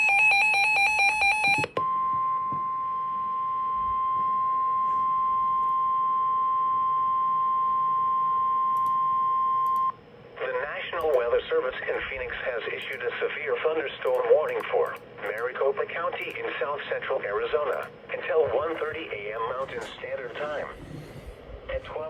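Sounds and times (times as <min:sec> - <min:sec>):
steady high alarm beep: 0:00.0 - 0:10.0.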